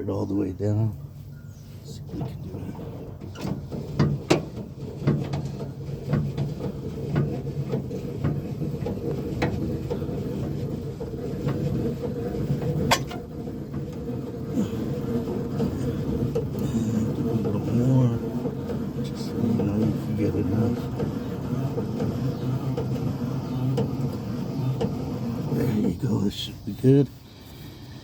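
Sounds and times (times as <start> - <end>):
steady low hum: 0.0 - 28.0
metal clicks and knocks: 12.6 - 14.0.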